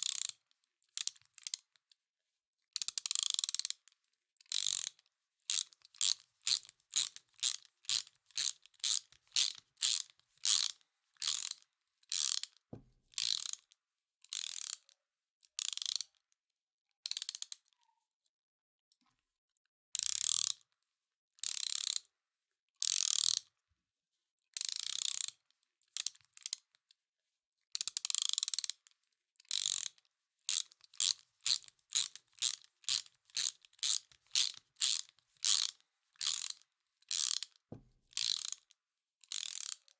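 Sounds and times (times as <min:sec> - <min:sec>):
ratchet wrench clicking: 0:02.9 - 0:03.8, 0:04.5 - 0:12.6, 0:13.2 - 0:13.6, 0:14.3 - 0:14.8, 0:15.6 - 0:16.0, 0:21.4 - 0:22.0, 0:22.8 - 0:23.4, 0:24.8 - 0:25.3, 0:27.9 - 0:28.7, 0:29.5 - 0:37.5, 0:38.2 - 0:38.6, 0:39.3 - 0:39.9.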